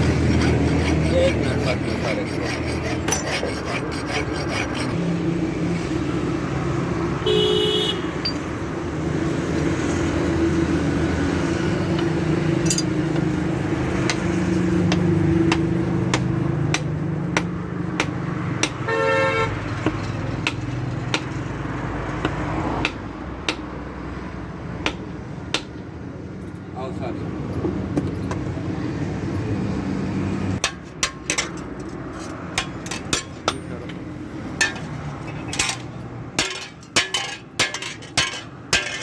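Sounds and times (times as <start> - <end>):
traffic hum: 0.0 - 39.0
vehicle horn tooting: 7.2 - 8.2, 18.9 - 19.6.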